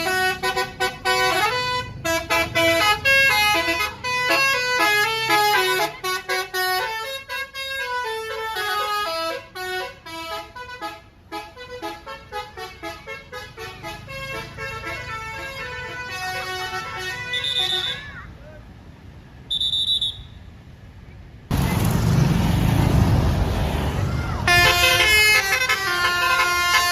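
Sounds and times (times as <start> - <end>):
bus multi-tone horn melody: 0.0 - 18.1, 24.4 - 26.9.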